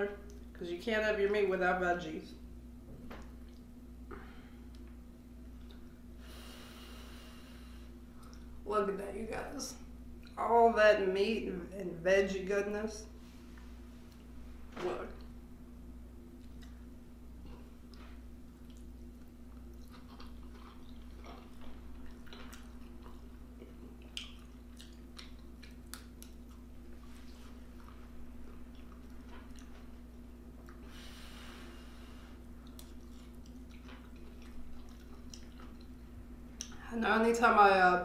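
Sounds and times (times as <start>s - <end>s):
low steady hum: 0.0s - 38.0s
close-up chewing: 16.3s - 31.0s, 32.4s - 36.8s.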